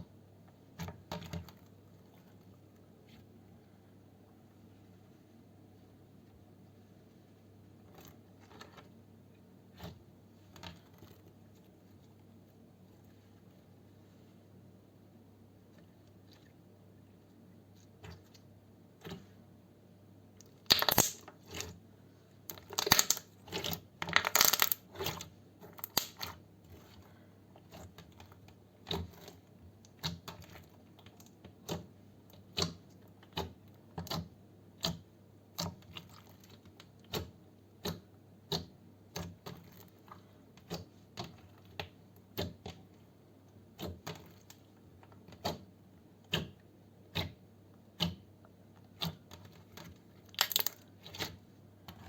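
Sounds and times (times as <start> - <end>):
slime crackling and popping: 20.6 - 21.3, 22.5 - 25.1, 25.8 - 26.3, 50.3 - 50.8.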